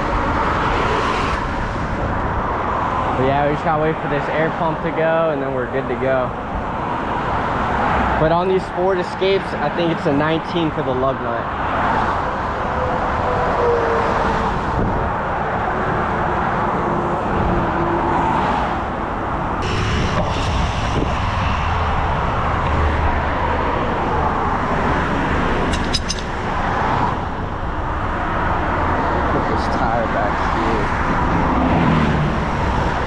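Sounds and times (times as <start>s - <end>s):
highway traffic rushing past: 0.0s - 9.4s, 11.5s - 33.0s
sharp metallic clicks: 23.6s - 27.4s.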